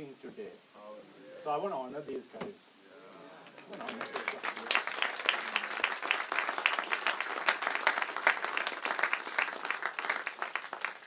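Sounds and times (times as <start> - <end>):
congregation applauding: 3.4 - 11.0.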